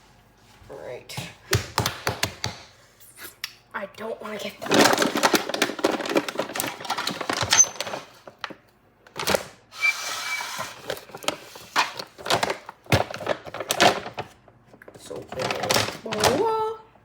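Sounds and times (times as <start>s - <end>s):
kitchen items clattering: 4.6s - 8.4s, 15.0s - 16.6s.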